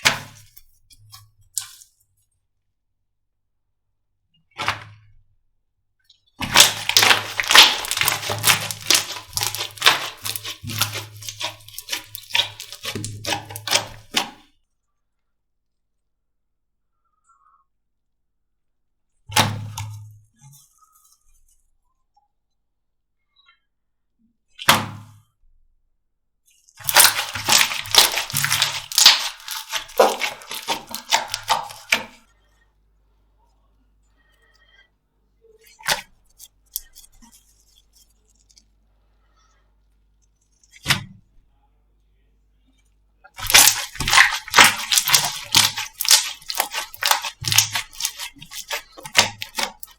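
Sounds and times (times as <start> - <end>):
slime crackling and popping: 6.4 - 14.4, 26.8 - 32.2, 43.4 - 49.9.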